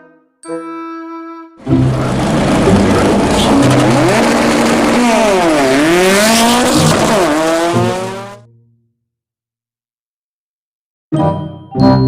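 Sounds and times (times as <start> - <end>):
loud noisy wash: 1.6 - 8.4
race car engine revving: 1.6 - 8.4.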